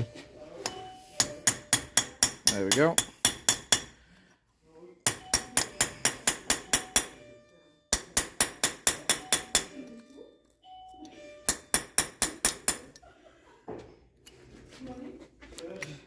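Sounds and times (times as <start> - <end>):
hammer striking steel: 0.6 - 4.0, 5.0 - 7.3, 7.9 - 9.8, 11.4 - 13.0.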